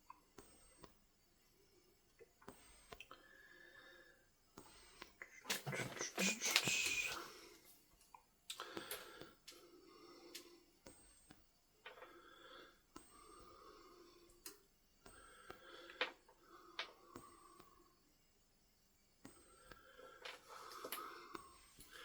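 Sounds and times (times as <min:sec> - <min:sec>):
wheezy breathing: 0:02.5 - 0:07.9, 0:08.5 - 0:11.3, 0:11.9 - 0:18.1, 0:19.3 - 0:22.0.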